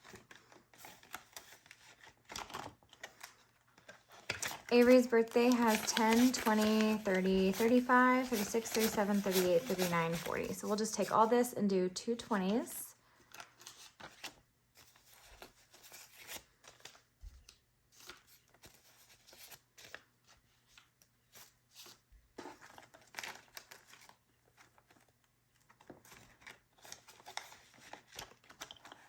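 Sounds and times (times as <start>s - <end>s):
paper money rustling: 0.0s - 17.0s.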